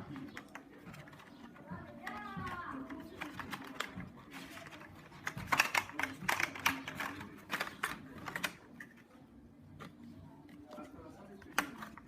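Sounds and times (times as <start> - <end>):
faint voice: 0.0 - 8.7
hard plastic clicking and tapping: 0.0 - 12.0.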